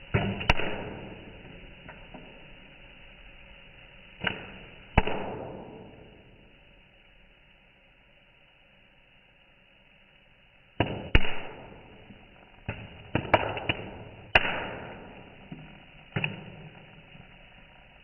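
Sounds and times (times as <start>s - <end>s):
popcorn kernels popping: 0.0s - 2.4s, 4.2s - 6.1s, 10.8s - 17.6s.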